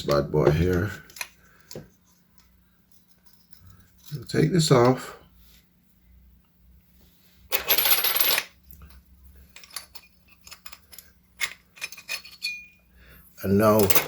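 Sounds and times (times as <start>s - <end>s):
metal lock parts jingling: 2.4s - 5.0s, 9.5s - 12.8s, 13.6s - 14.0s.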